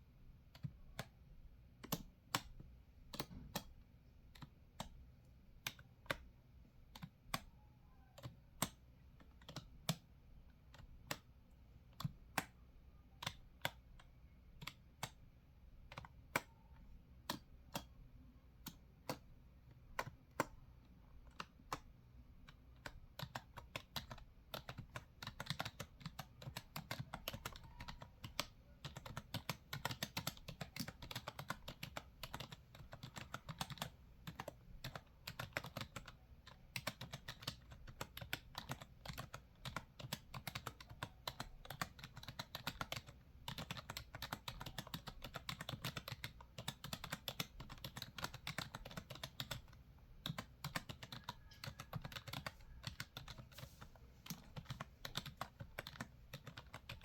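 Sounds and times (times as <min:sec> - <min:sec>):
keyboard typing: 0:01.8 - 0:06.3, 0:08.1 - 0:12.6, 0:13.2 - 0:57.0.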